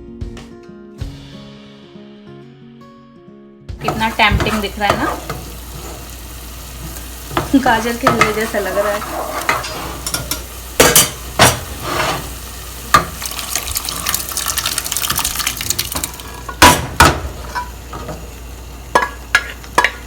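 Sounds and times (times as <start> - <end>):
spoon knocking against pan: 3.8 - 5.4, 6.8 - 8.5, 9.5 - 11.7, 12.9 - 13.2, 18.9 - 20.0
hissing liquid: 11.7 - 16.4.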